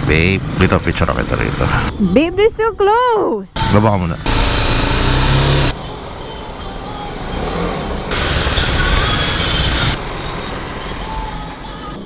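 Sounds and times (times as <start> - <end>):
street traffic: 0.0 - 12.0
motorcycle engine idling: 3.6 - 5.8
loud rush of noise: 7.6 - 10.8.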